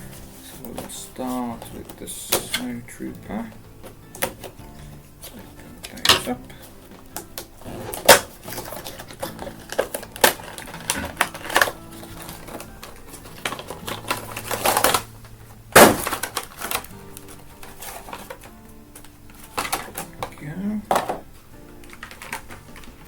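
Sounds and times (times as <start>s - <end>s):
packaging crinkling and tearing: 5.3s - 20.6s, 21.8s - 23.0s.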